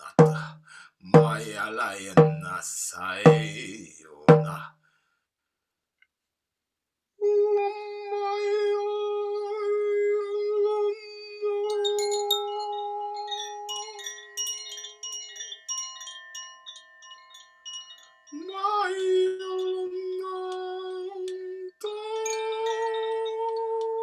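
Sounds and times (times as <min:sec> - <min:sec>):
voice singing long held tones: 0:07.2 - 0:14.3, 0:18.4 - 0:24.0
chimes tinkling: 0:11.7 - 0:20.0, 0:21.9 - 0:23.8.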